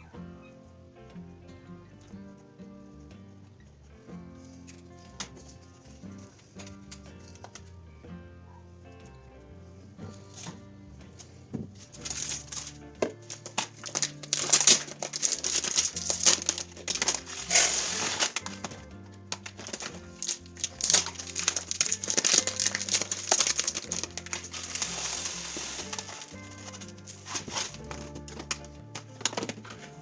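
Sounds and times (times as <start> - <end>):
plastic packaging crinkling: 11.9 - 30.0.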